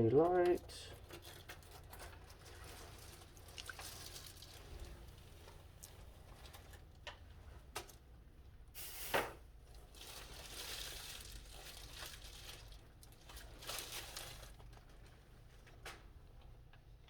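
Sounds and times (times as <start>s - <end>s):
packaging rustling: 9.7s - 15.8s.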